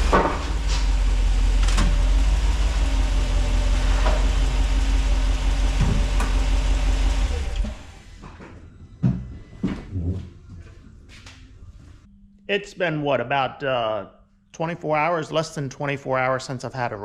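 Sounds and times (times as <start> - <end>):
truck engine idling: 0.0 - 8.1.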